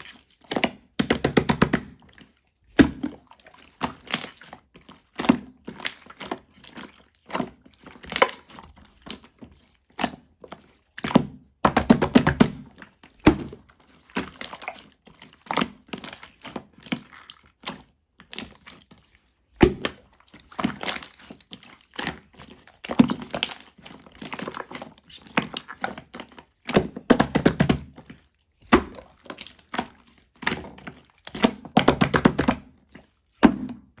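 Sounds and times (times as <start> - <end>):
slime squeezed by hand: 19.6 - 33.9.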